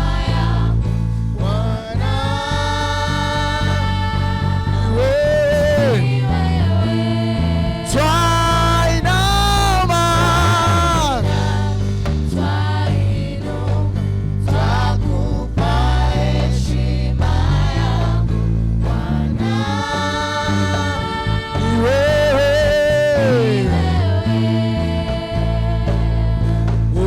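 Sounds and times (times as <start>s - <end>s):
gospel praise band playing: 0.0s - 27.0s
people singing long notes: 1.4s - 27.0s.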